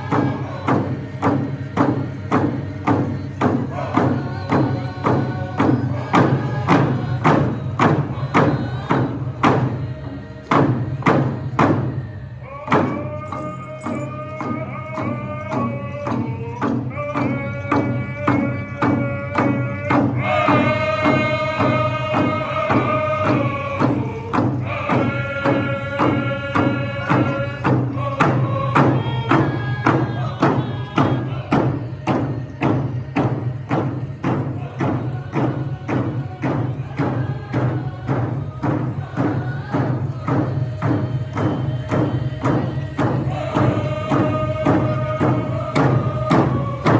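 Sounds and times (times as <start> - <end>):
big drum beat: 0.0 - 12.0, 12.7 - 46.9
voices singing in unison: 0.0 - 46.9.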